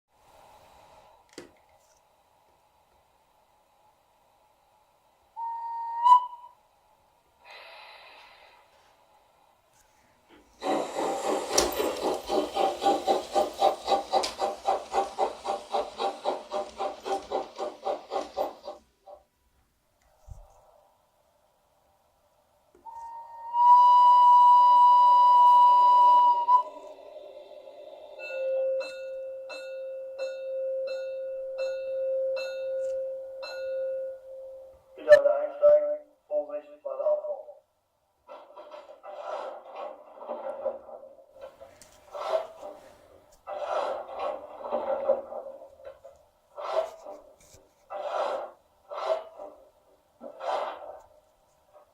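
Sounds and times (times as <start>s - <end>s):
model steam locomotive chuffing: 10.4s - 19.3s, 23.6s - 29.7s, 38.3s - 51.9s.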